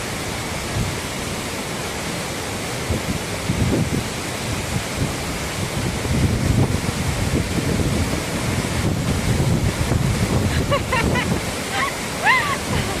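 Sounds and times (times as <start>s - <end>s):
waterfall roaring: 0.0s - 13.0s
wind buffeting microphone: 2.8s - 13.0s.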